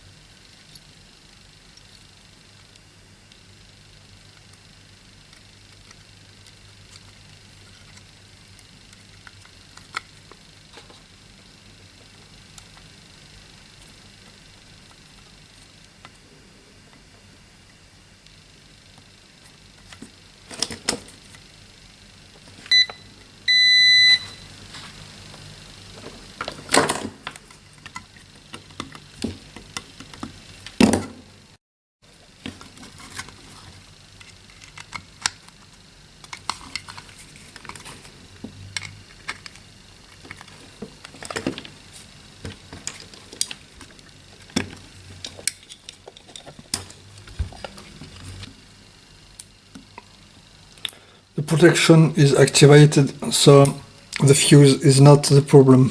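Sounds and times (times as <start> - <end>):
electronic beeps: 22.7 - 24.4.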